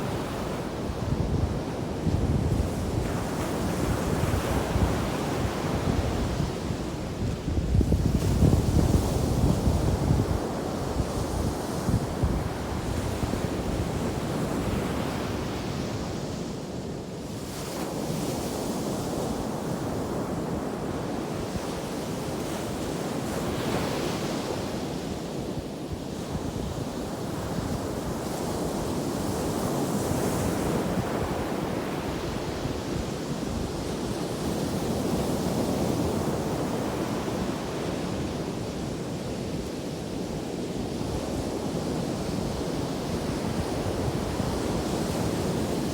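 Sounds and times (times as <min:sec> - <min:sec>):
wind buffeting microphone: 0:00.9 - 0:14.4.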